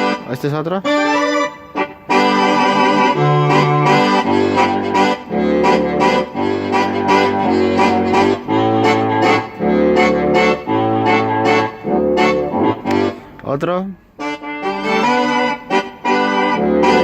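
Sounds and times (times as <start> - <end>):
keyboard playing brass-like chords: 0.0 - 17.0
low bass line: 2.3 - 13.4.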